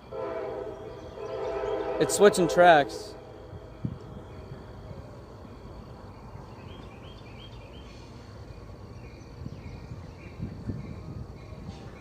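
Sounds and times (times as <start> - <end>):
high insect drone: 0.0 - 9.2
songbird singing: 0.0 - 12.0.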